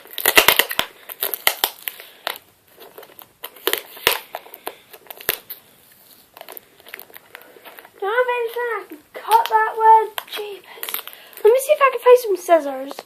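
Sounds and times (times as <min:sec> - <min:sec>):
packing tape crinkling and tearing: 0:00.0 - 0:13.0.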